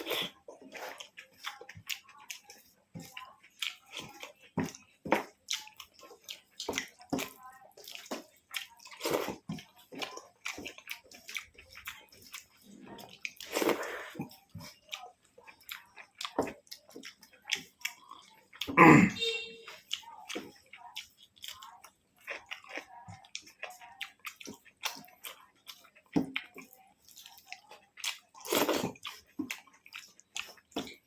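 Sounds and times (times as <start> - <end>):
wet chewing and smacking: 0.0 - 31.0.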